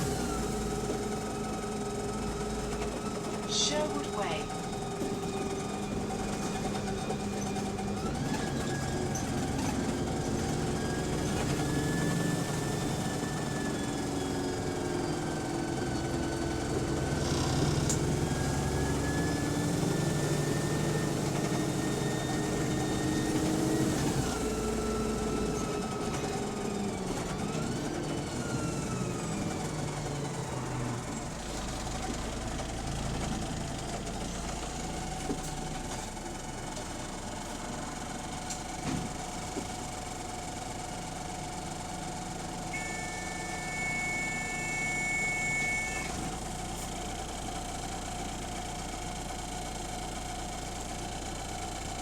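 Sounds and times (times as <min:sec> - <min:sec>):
bus engine running: 0:00.0 - 0:52.0
gearbox whine: 0:42.7 - 0:46.6.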